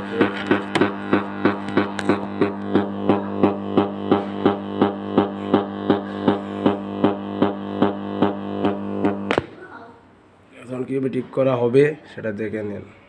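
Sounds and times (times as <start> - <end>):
low drone: 0.0 - 9.5
repeating plucked note: 0.0 - 9.5.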